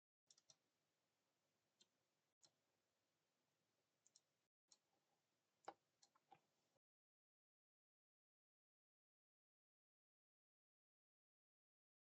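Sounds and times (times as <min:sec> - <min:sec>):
computer mouse clicks: 0:00.3 - 0:00.6.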